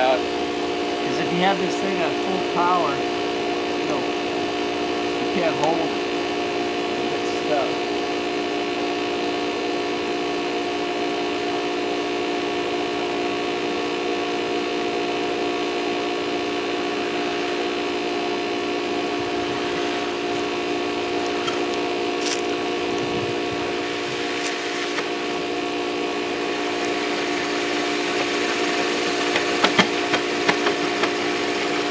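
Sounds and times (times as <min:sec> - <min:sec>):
electric drill grinding into brick: 0:16.7 - 0:31.9.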